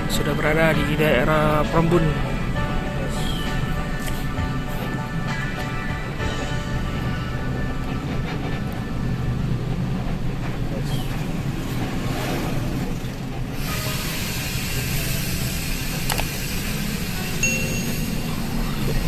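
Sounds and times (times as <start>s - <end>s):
bus engine and road rumble: 0.0s - 19.0s
high hiss: 13.6s - 18.8s.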